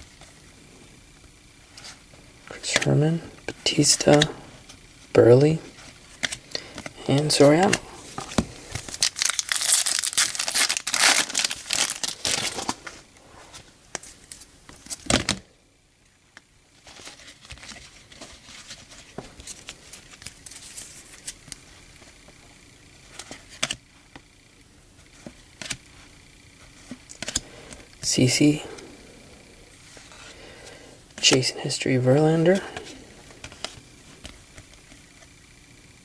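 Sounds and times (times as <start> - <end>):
wrapper tearing and crinkling: 7.4 - 12.9.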